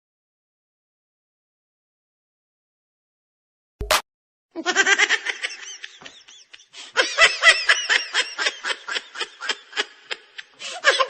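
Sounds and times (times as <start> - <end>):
laughter: 4.6 - 11.0.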